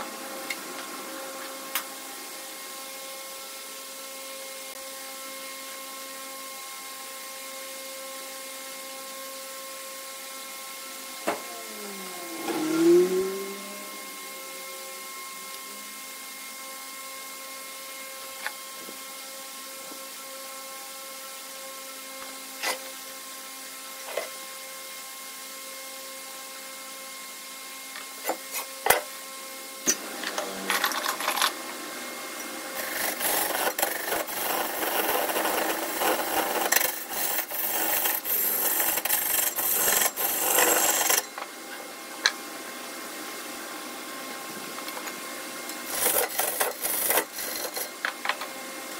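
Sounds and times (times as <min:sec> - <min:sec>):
wood lathe humming: 0:11.3 - 0:17.3, 0:32.7 - 0:41.4, 0:45.8 - 0:48.0
tool rasping against spinning wood: 0:32.8 - 0:41.3, 0:45.9 - 0:48.0.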